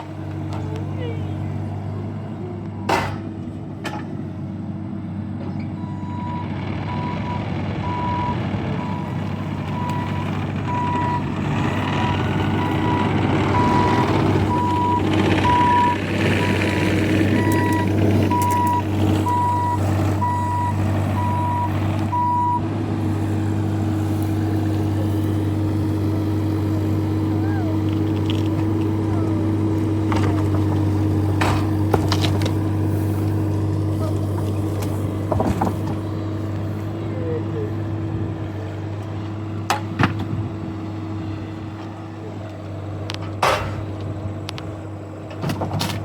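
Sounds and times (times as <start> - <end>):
diesel engine running: 0.0 - 46.0
backup alarm beeping: 5.8 - 16.7, 17.4 - 22.6.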